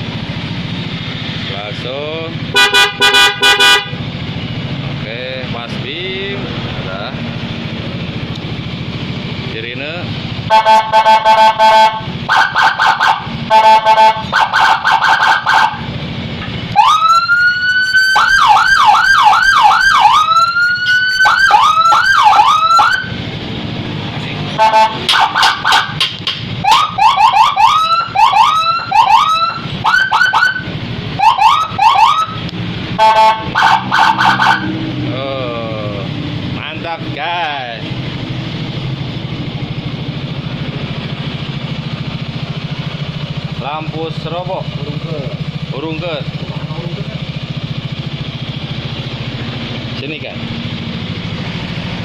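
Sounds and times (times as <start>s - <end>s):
electronic siren cycling tones: 16.7s - 23.2s, 26.6s - 32.4s, 33.0s - 34.8s.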